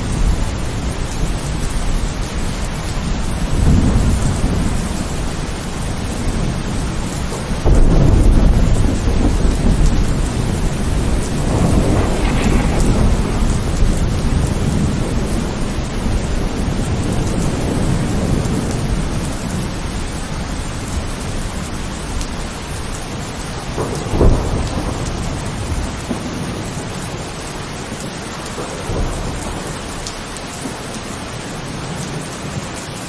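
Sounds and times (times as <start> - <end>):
thunder rumbling: 0.0 - 22.2, 23.6 - 27.3
heavy rain: 0.0 - 33.0.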